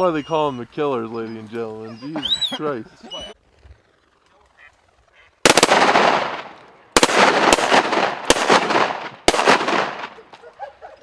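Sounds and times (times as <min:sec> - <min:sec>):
shotgun shots echoing: 0:05.4 - 0:10.3.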